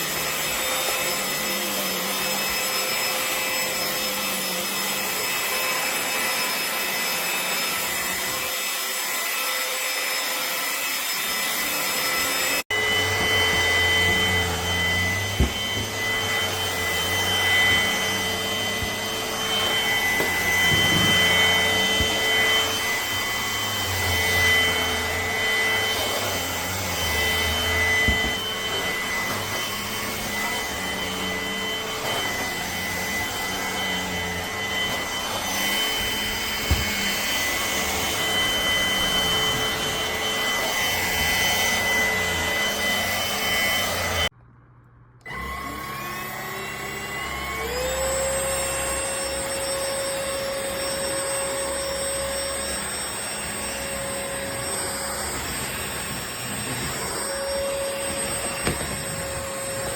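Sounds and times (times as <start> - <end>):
stick vacuum motor whine: 0.0 - 44.3, 45.2 - 59.9.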